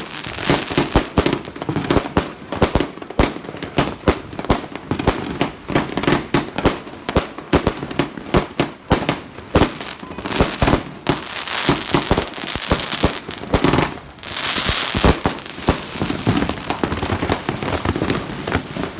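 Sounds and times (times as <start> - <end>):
crackling firework stars: 0.0 - 18.9
firework reports: 0.0 - 18.9.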